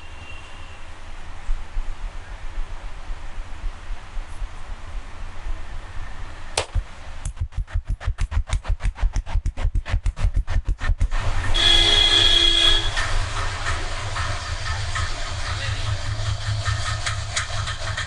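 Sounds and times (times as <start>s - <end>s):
hands chopping and slapping on skin: 6.6s - 11.1s
sharp crack: 6.6s - 11.6s.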